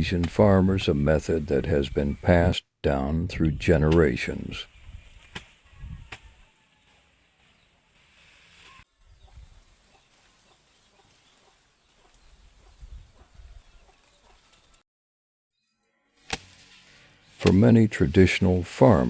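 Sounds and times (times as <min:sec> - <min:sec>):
chickens clucking: 0:00.0 - 0:02.5, 0:04.1 - 0:14.8
steady high hiss: 0:00.0 - 0:02.5, 0:04.2 - 0:12.9, 0:16.2 - 0:19.0.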